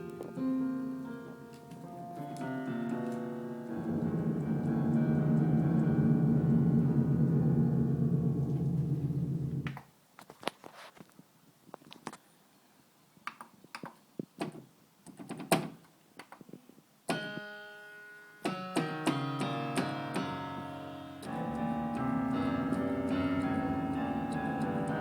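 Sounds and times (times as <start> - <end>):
electronic piano notes: 0.0 - 9.7, 18.5 - 25.0.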